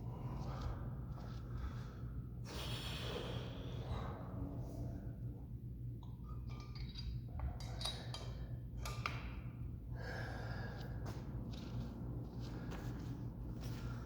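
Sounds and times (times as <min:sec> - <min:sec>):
man breathing and sniffling: 0:00.0 - 0:05.0
steady low hum: 0:00.0 - 0:14.0.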